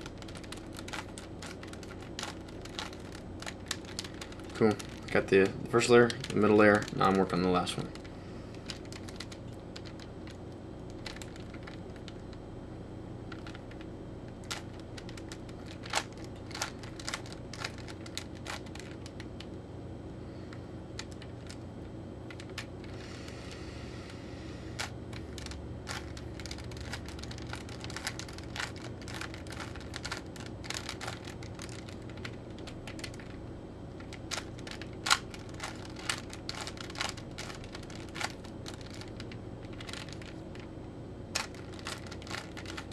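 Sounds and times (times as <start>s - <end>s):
steady low hum: 0.0s - 42.9s
puzzle cube clicking: 0.1s - 7.2s, 24.8s - 33.4s, 34.0s - 40.3s.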